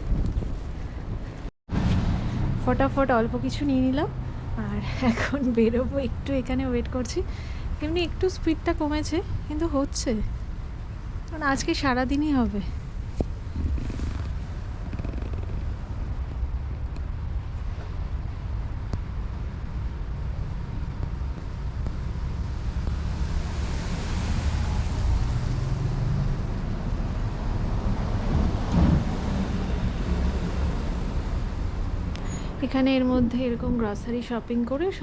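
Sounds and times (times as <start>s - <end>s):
wind buffeting microphone: 0.0s - 8.3s, 12.5s - 25.8s.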